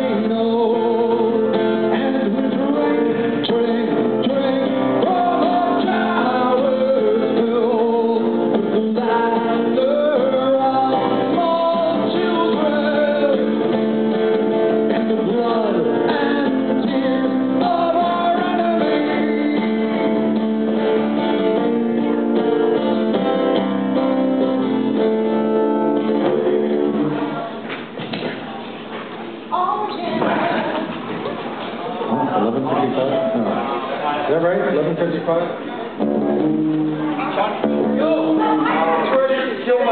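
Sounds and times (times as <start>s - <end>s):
man singing: 0.0s - 21.2s, 26.0s - 27.4s, 37.6s - 39.9s
acoustic guitar: 0.0s - 39.9s.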